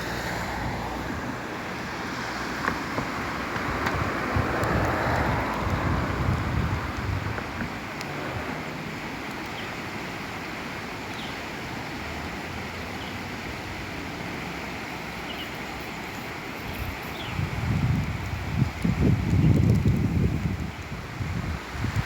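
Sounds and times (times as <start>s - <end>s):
wind buffeting microphone: 0.0s - 9.0s, 16.6s - 22.0s
river water rushing: 0.0s - 18.8s, 20.2s - 22.0s.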